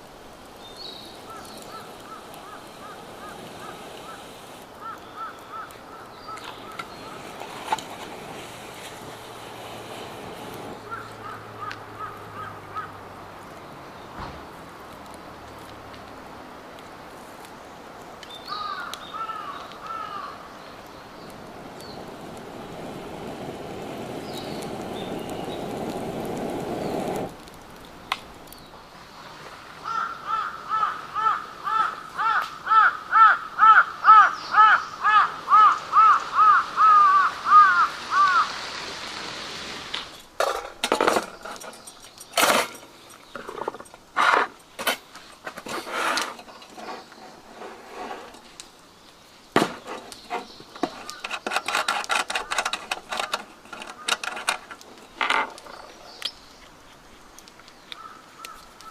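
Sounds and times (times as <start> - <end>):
knocks and clatters: 40.4 - 47.0.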